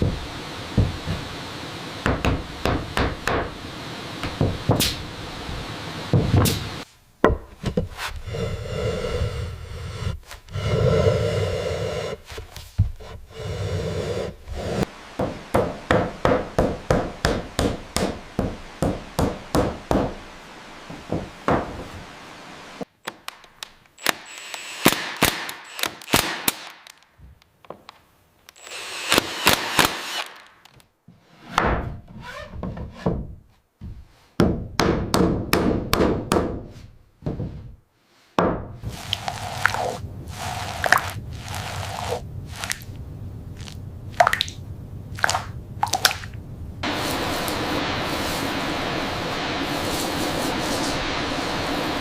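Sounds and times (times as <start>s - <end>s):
scraping and rubbing on wood: 38.8s - 42.9s.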